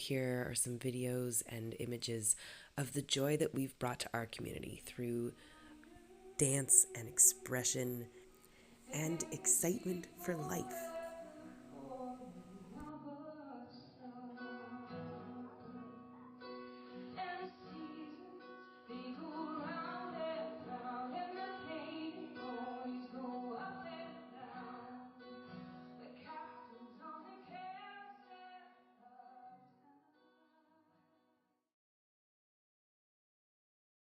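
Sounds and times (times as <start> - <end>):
woman singing: 0.0 - 25.3, 25.9 - 29.8
plucked acoustic guitar: 14.4 - 27.0.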